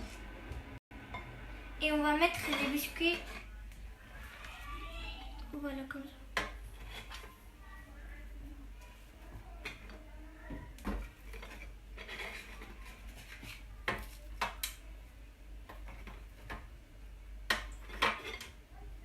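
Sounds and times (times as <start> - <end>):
dish and utensils clinking: 17.5 - 18.6.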